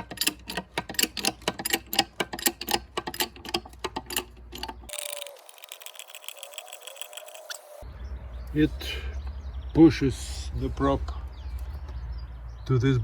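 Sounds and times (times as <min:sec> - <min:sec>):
hydraulic jack metallic clicks: 0:00.0 - 0:07.8.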